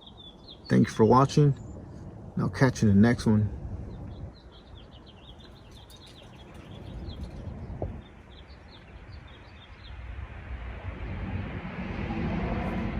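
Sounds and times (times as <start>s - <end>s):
small birds chirping: 0.0s - 10.2s
low outdoor rumble: 0.0s - 12.9s.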